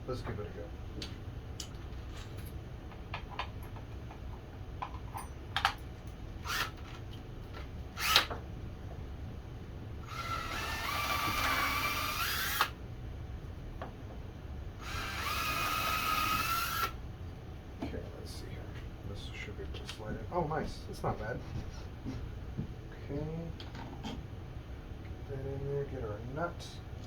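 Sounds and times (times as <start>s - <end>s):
handling clicks and knocks: 1.0s - 6.2s
power drill whining: 6.4s - 6.8s, 8.0s - 8.3s, 10.1s - 12.8s, 14.8s - 17.0s.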